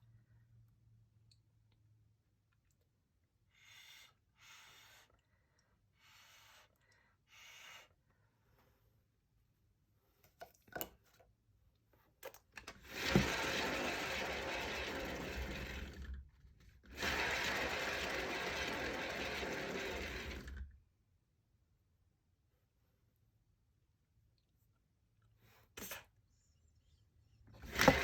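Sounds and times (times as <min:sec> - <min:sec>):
turntable whirring on bearings: 0:12.8 - 0:16.3, 0:16.9 - 0:20.7, 0:27.6 - 0:28.0.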